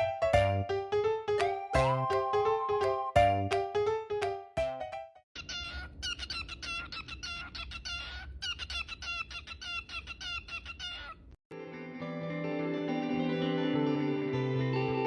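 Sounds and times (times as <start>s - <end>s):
music: 0.0s - 5.2s, 11.5s - 15.0s.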